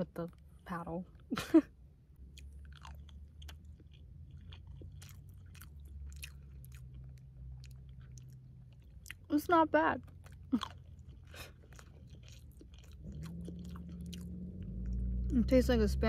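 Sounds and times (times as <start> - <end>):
low steady hum: 0.0 - 16.0
person chewing food: 2.2 - 9.3, 10.0 - 15.1.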